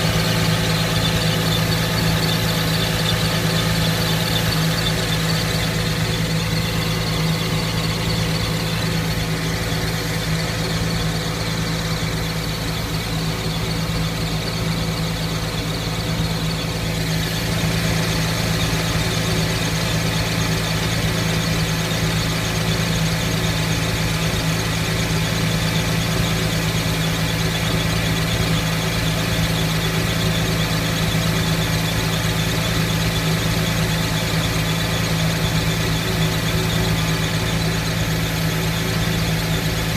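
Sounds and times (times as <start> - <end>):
persistent squeak: 0.0 - 19.1
car engine running: 0.0 - 39.9.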